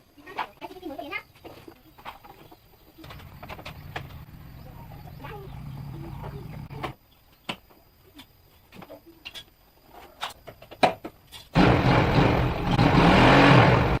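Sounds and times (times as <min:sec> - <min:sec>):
motorcycle engine revving: 0:03.0 - 0:06.9, 0:11.6 - 0:14.0.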